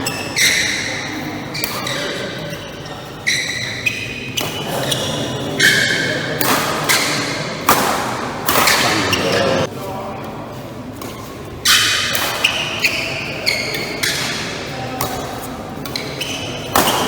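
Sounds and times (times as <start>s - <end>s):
rackets hitting shuttlecock: 5.6s - 9.7s, 11.0s - 12.9s, 13.8s - 17.0s.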